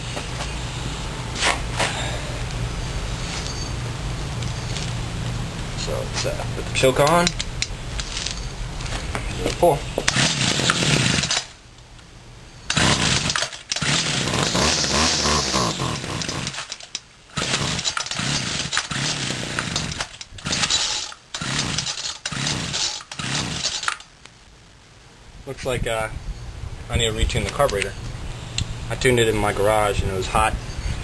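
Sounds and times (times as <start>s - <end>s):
string trimmer engine running unevenly: 10.1s - 11.4s, 12.7s - 16.8s, 17.4s - 23.9s.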